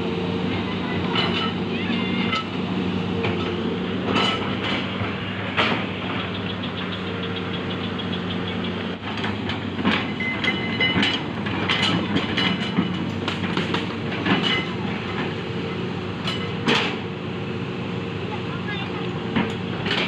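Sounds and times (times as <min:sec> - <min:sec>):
excavator diesel engine running: 0:00.0 - 0:20.0
metallic clanks and squeaks: 0:01.1 - 0:02.6, 0:03.2 - 0:04.9, 0:09.1 - 0:15.2.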